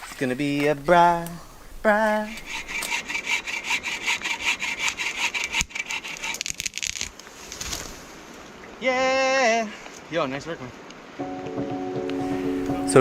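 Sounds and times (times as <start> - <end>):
hand saw cutting wood: 2.1 - 6.9.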